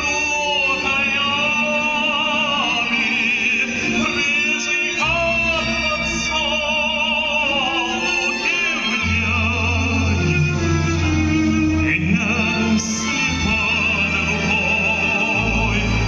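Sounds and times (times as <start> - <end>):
man singing with vibrato: 0.0 - 16.0.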